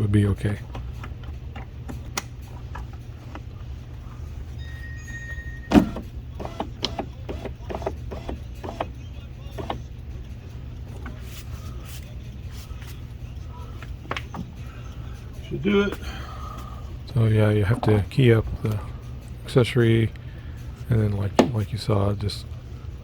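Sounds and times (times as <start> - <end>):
steady low hum: 0.0 - 23.0
brief high tone: 4.6 - 5.8
clicks and knocks on car door: 21.4 - 21.6.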